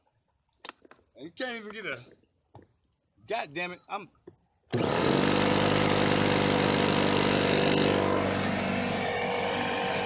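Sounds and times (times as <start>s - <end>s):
air compressor motor hum: 4.8s - 10.0s.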